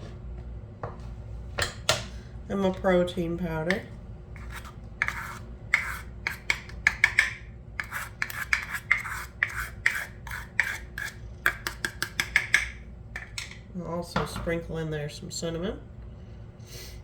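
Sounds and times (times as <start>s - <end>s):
batter stirred in mixing bowl: 2.5s - 13.4s.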